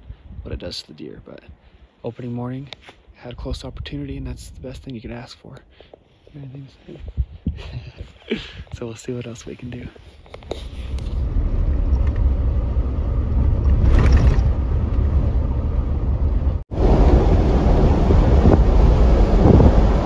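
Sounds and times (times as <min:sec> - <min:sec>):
wind buffeting microphone: 0:03.3 - 0:05.1, 0:06.9 - 0:20.0.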